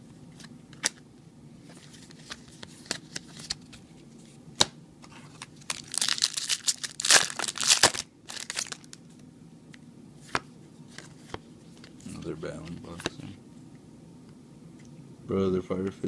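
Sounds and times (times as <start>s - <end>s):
foil wrapper crinkling and tearing: 5.6s - 9.0s.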